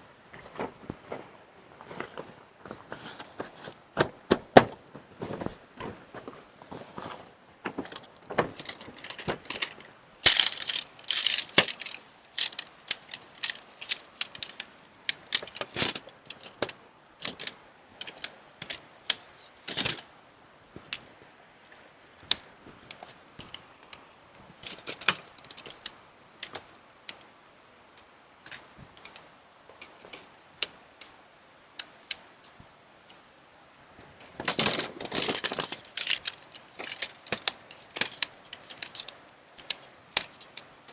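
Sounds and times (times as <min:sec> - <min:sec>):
small hard objects clattering: 0:01.8 - 0:16.7, 0:34.4 - 0:40.6.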